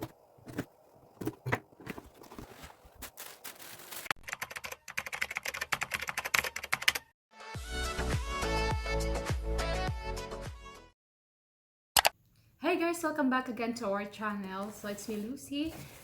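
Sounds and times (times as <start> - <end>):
sharp clicks and taps: 12.0 - 12.2.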